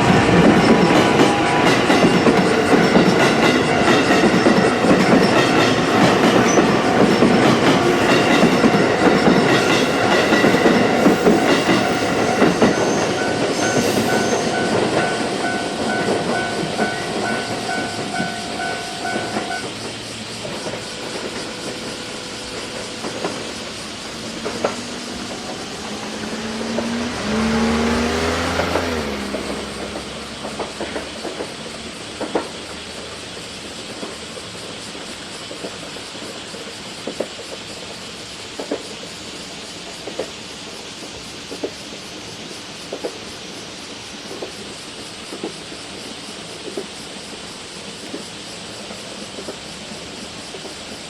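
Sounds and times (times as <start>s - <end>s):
level crossing warning bell: 0.0s - 19.8s
whine: 0.0s - 32.0s
train wheels clattering over rails: 0.0s - 51.0s.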